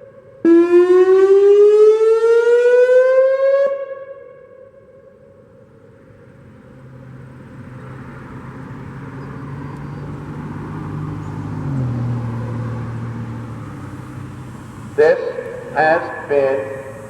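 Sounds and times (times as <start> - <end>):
vehicle passing by: 6.1 - 17.0.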